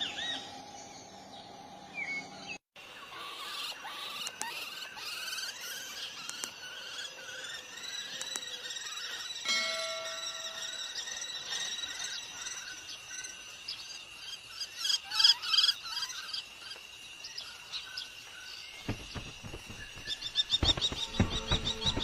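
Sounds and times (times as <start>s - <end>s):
birds chirping and calling: 0.0s - 22.0s
soft low thumps: 18.8s - 22.0s.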